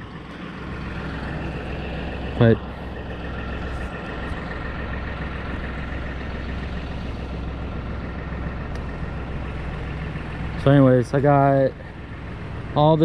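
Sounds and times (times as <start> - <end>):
tractor engine idling: 0.0 - 13.0.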